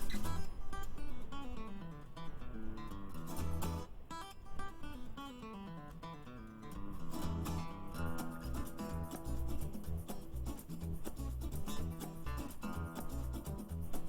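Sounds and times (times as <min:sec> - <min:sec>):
plucked acoustic guitar melody: 0:00.0 - 0:14.0
bass line: 0:07.2 - 0:14.0.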